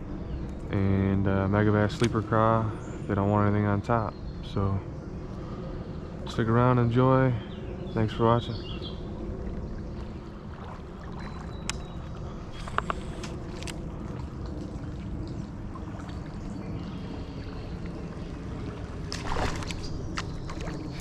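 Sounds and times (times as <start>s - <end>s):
creek water gurgling: 8.0s - 21.0s
short splash: 19.0s - 21.0s.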